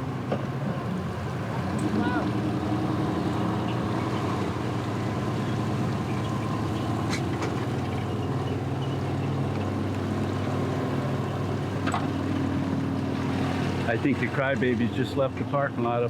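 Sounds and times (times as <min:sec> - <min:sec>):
boat engine humming: 0:00.0 - 0:16.0.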